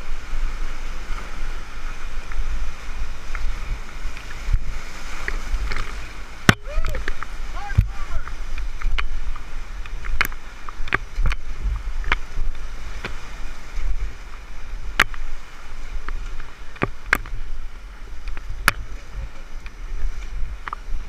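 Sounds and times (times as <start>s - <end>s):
whitewater rushing: 0.0s - 21.0s
wind on microphone: 0.0s - 21.0s
sharp knocks or splashes: 4.2s - 9.2s.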